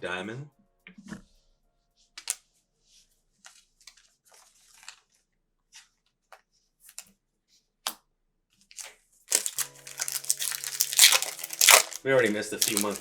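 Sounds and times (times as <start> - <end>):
cards swishing: 9.3 - 13.0.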